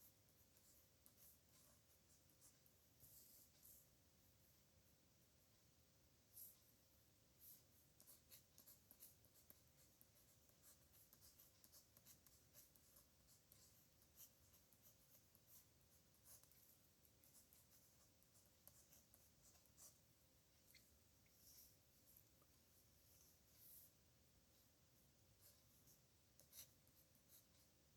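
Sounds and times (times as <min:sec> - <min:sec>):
pen scratching on paper: 0:00.0 - 0:03.8, 0:07.4 - 0:20.0, 0:25.4 - 0:27.7.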